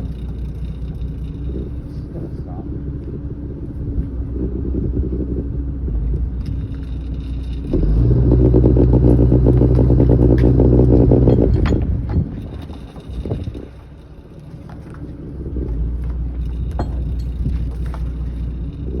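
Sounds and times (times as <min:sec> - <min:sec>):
boat engine revving: 0:00.0 - 0:11.8.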